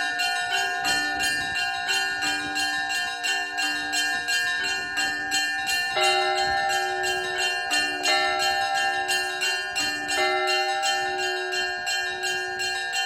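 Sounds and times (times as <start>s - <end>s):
church bells pealing: 0.0s - 13.0s
small bells ringing: 0.0s - 13.0s
deep heavy bell stroke: 6.0s - 13.0s.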